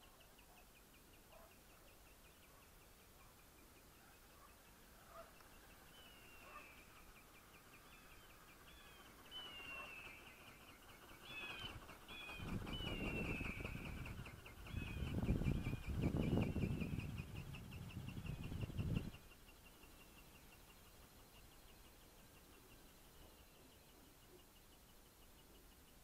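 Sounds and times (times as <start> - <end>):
birds chirping and whistling: 5.2 - 7.0, 7.8 - 19.3
low rumbling noise: 11.7 - 19.2.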